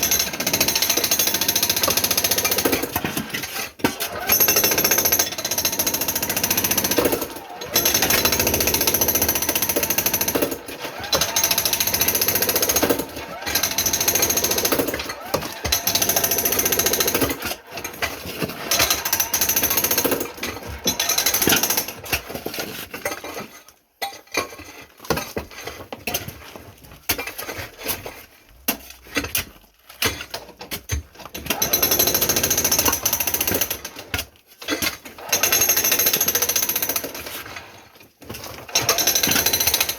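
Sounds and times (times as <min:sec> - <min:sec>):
jackhammer breaking concrete: 0:00.0 - 0:22.9, 0:31.2 - 0:39.9.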